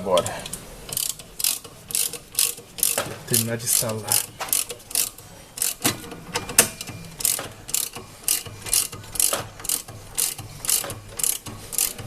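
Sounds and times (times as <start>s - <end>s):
ratchet wrench clicking: 0.2s - 12.0s.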